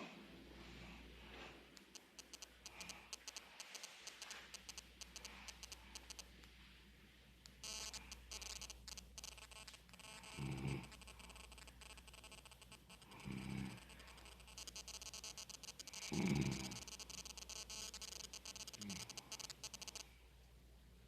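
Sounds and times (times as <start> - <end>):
faint ticking clicks: 1.8 - 6.5, 7.4 - 20.1
person snoring: 10.3 - 11.0, 13.0 - 14.1, 15.9 - 16.9, 18.7 - 19.2.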